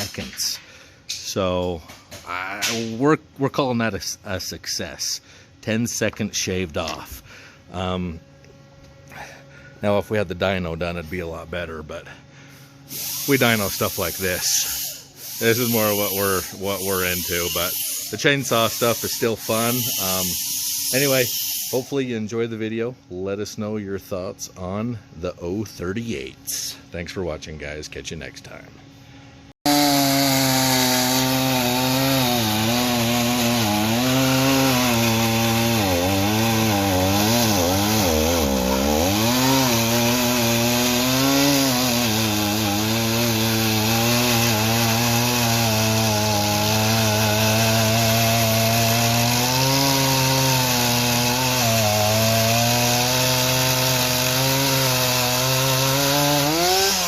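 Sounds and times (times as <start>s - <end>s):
chainsaw cutting a log: 12.9s - 21.9s, 29.7s - 57.0s.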